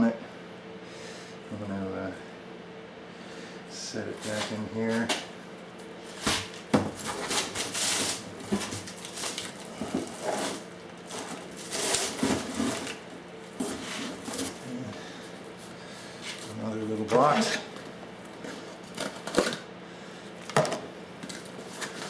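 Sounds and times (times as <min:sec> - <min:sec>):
cardboard packing rustling: 0:06.0 - 0:19.6, 0:21.2 - 0:22.0.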